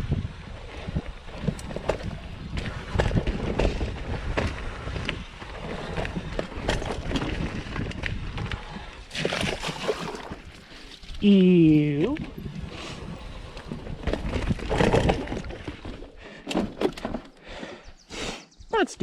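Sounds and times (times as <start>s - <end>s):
wind on microphone: 0.0s - 16.0s
bike tyres rumbling over dirt: 0.0s - 17.6s
bike knocking and rattling: 0.1s - 9.0s, 11.9s - 17.6s.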